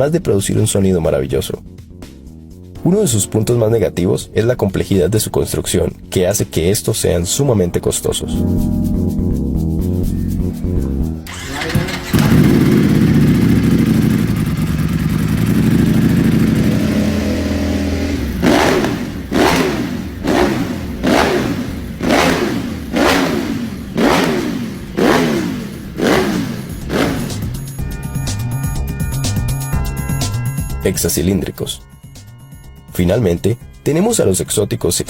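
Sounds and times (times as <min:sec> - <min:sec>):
motorcycle engine revving: 0:11.3 - 0:28.0.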